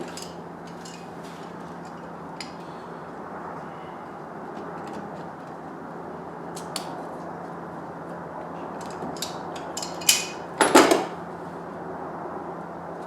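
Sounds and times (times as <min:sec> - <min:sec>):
tools clinking: 0:00.0 - 0:02.6, 0:08.8 - 0:11.1
parts clattering: 0:00.0 - 0:02.7, 0:08.8 - 0:11.2.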